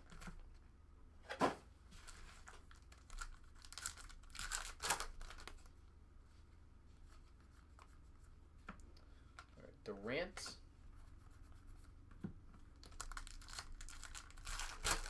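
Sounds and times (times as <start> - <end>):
foil wrapper tearing: 2.1 - 5.7, 12.8 - 15.0
foil rustling: 12.8 - 15.0.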